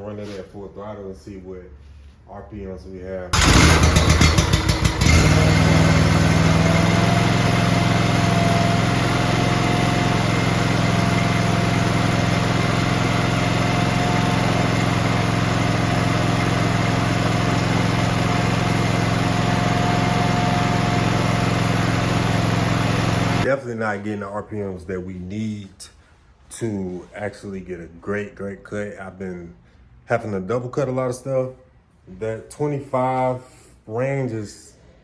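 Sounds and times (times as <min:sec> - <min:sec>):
mower engine running at full throttle: 0:03.4 - 0:23.5.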